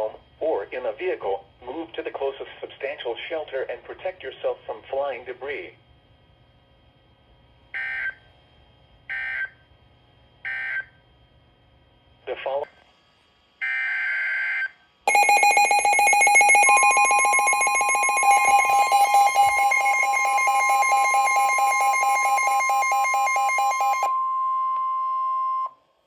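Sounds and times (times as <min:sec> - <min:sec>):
electronic alarm beeping: 0:13.6 - 0:25.7
steady warning alarm tone: 0:13.6 - 0:25.7
digital data tones: 0:15.1 - 0:24.2.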